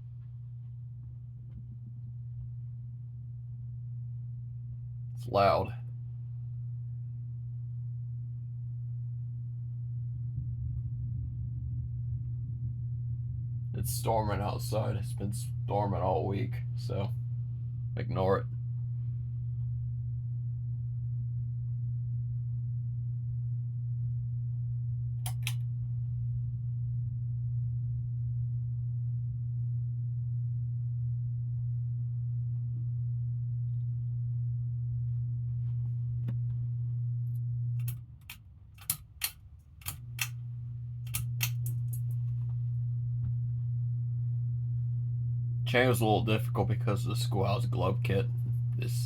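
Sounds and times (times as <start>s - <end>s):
ceiling fan motor hum: 0.0s - 49.0s
pull-chain switch clicking: 25.3s - 25.6s, 37.8s - 40.4s, 41.1s - 42.2s.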